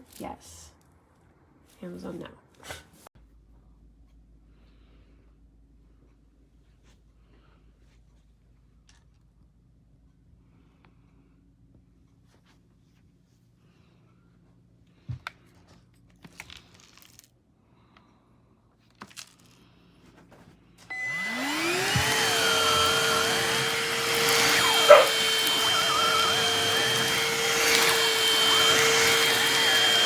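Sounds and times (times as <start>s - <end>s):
handheld vacuum motor whining: 20.8s - 30.0s.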